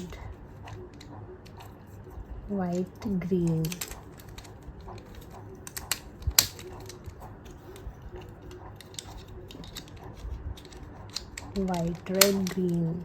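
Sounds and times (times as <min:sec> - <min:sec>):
plastic cube pieces clicking: 0:02.8 - 0:13.0.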